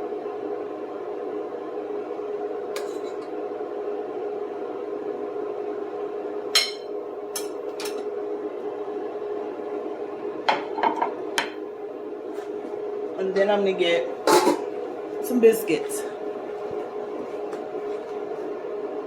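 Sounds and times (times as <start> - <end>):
kitchen appliance electric hum: 0.0 - 19.0
utensil clinking against dishes: 6.6 - 8.0, 14.3 - 14.7.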